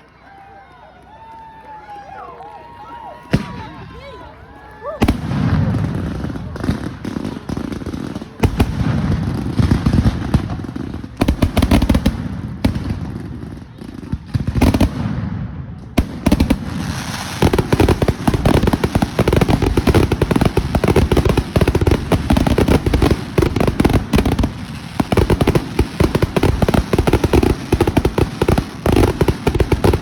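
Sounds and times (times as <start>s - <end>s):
fireworks bangs and crackles: 3.2s - 30.0s.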